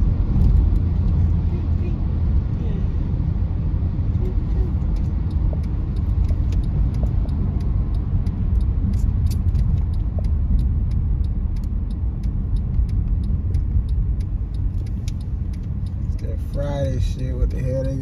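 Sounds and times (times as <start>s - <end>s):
road and engine rumble: 0.0s - 18.0s
faint rapid ticking: 4.7s - 18.0s.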